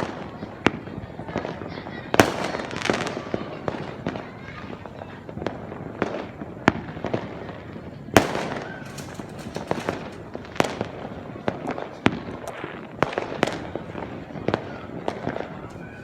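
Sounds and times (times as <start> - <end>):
fireworks bangs and pops: 0.0 - 16.0
fireworks crackle: 0.0 - 16.0.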